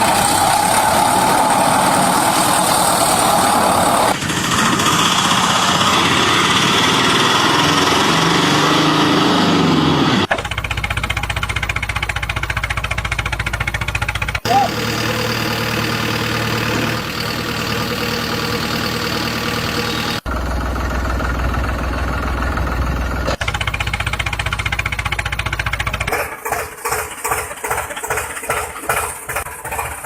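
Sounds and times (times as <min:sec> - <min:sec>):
vehicle engine running: 0:00.0 - 0:30.0.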